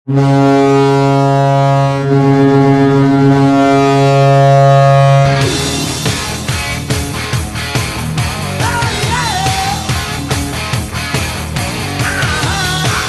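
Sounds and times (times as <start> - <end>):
deep goal horn: 0.0 - 7.2
rock music with drums: 5.2 - 13.0.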